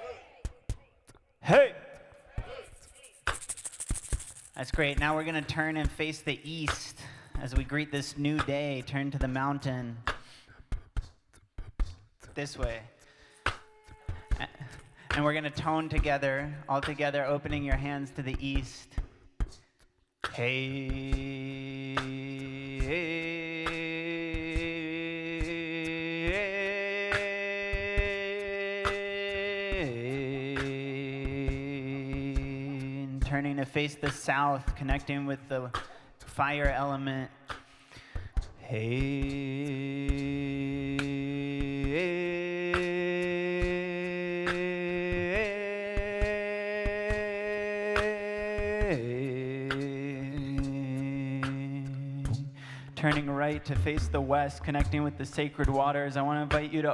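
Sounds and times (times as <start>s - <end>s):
group of voices toning: 0.0s - 0.8s
group of people toning vowels: 0.0s - 3.6s, 13.0s - 15.3s
short drum beats: 0.0s - 56.9s.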